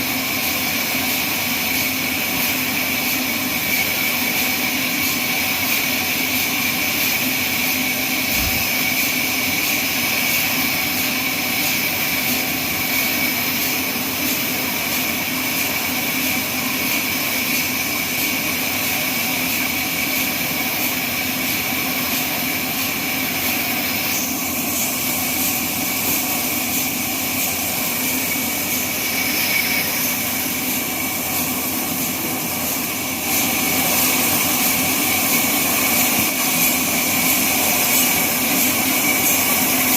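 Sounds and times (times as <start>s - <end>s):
band sawmill whining: 7.8s - 10.3s, 23.0s - 38.0s.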